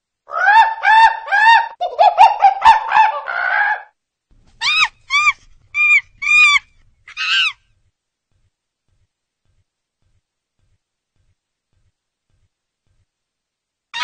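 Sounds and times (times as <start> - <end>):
bird calling: 4.6 - 7.7.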